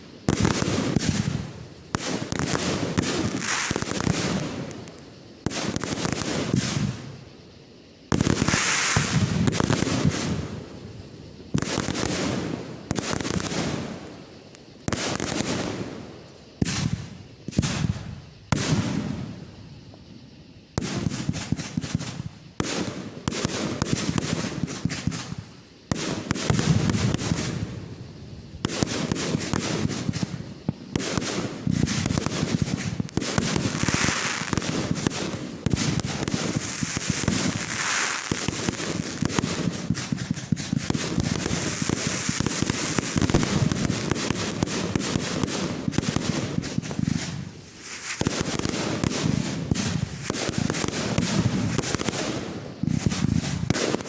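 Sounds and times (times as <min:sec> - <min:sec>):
fireworks crackling and popping: 0:00.0 - 0:54.0.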